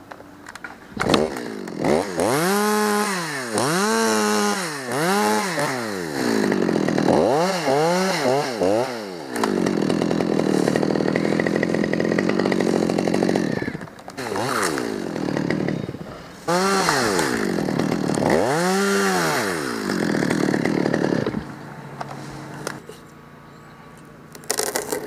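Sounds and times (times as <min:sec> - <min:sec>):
chainsaw revving: 0:01.0 - 0:22.9, 0:24.3 - 0:25.0.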